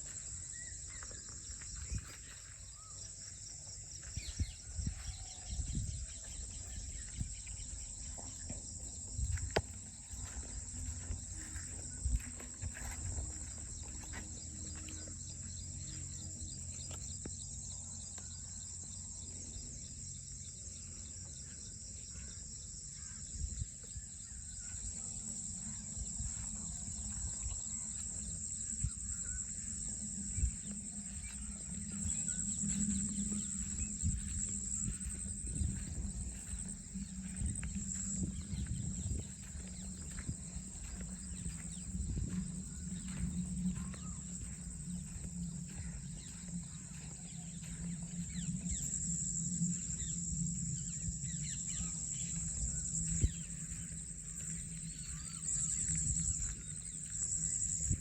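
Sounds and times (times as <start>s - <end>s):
insects chirping: 0.0s - 58.0s
low rumble: 24.8s - 58.0s.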